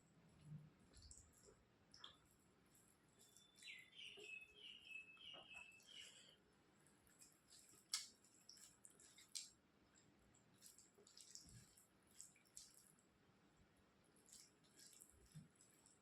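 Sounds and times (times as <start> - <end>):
wet eating clicks and smacks: 7.1 - 13.1, 14.2 - 16.0.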